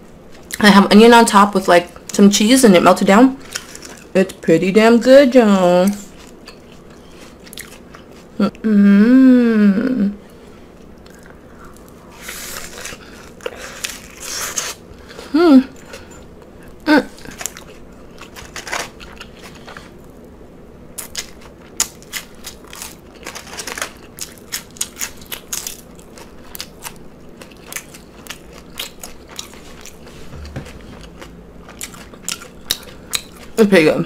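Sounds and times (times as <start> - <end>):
crisp crackly chewing: 15.8 - 20.3, 21.0 - 34.0.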